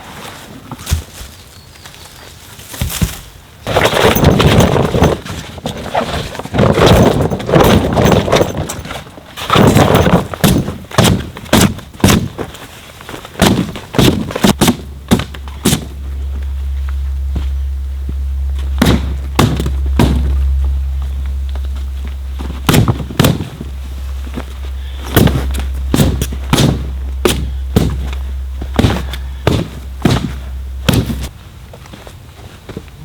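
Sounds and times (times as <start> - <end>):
steady low hum: 0.7 - 33.0
sharp knocks and thumps: 6.6 - 12.4, 13.4 - 16.4, 17.3 - 31.3.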